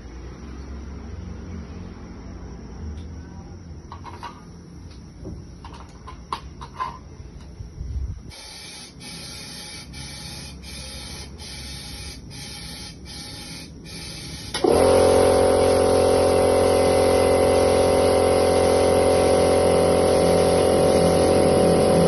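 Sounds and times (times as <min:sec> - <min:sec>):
spray gun hissing bursts: 0:08.3 - 0:22.0.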